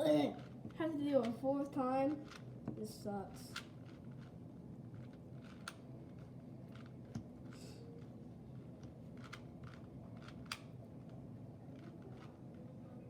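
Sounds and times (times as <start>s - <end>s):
puzzle cube plastic clicks: 8.8s - 10.8s.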